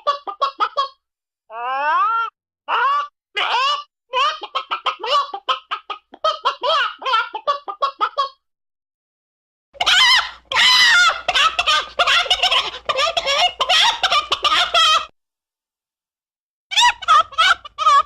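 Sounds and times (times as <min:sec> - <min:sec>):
chicken clucking: 0:00.0 - 0:01.0, 0:03.6 - 0:08.4, 0:09.8 - 0:15.1.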